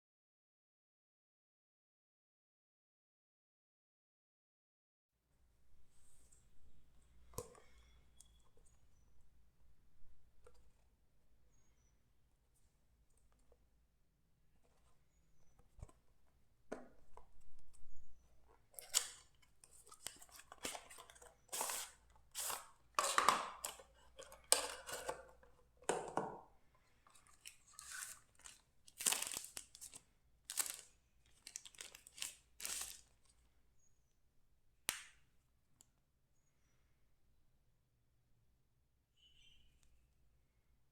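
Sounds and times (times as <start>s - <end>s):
packaging tearing and crinkling: 27.7s - 33.1s.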